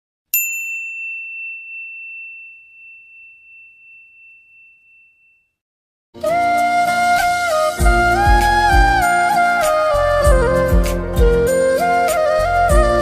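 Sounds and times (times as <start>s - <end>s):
high bell-like ding: 0.3s - 5.6s
flute-led devotional music: 6.2s - 13.0s.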